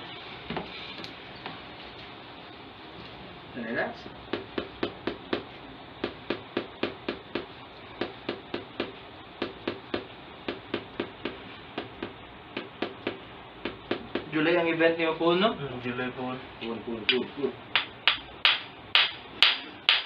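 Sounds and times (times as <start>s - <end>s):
sharp taps: 4.3s - 14.3s.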